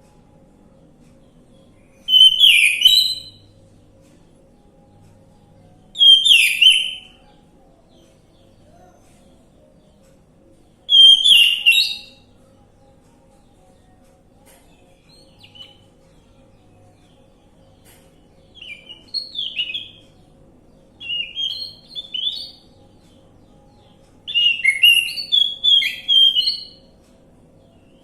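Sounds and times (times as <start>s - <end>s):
thrush singing whistled phrases: 2.0s - 3.4s, 6.0s - 7.1s, 10.9s - 12.2s, 24.3s - 26.8s.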